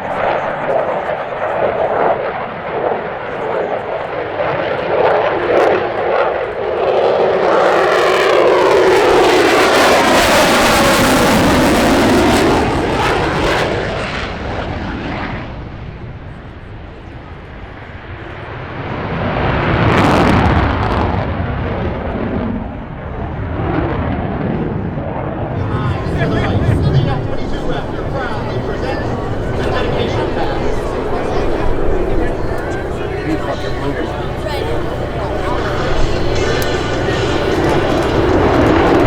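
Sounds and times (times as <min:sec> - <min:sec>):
airplane flying past: 0:07.4 - 0:15.0, 0:25.6 - 0:39.0.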